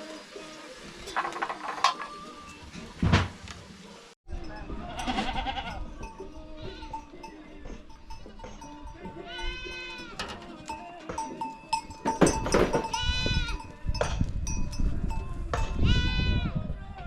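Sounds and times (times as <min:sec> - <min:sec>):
knocks and clatter: 0:01.1 - 0:02.2, 0:12.0 - 0:13.0
goats bleating: 0:04.7 - 0:07.2, 0:09.1 - 0:10.4, 0:15.8 - 0:16.6.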